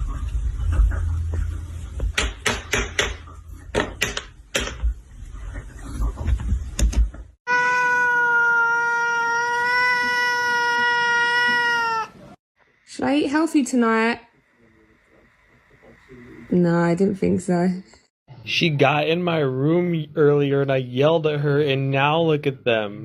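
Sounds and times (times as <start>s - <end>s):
cat yowling meow: 7.5s - 12.4s.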